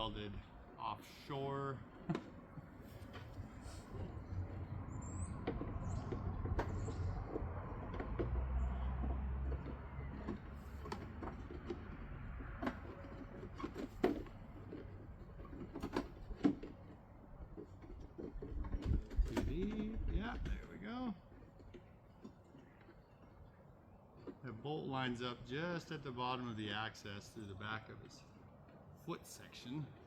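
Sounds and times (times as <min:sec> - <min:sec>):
plastic parts rubbing and creaking: 0:00.0 - 0:26.0
sharp knocks and clicks: 0:01.9 - 0:23.6.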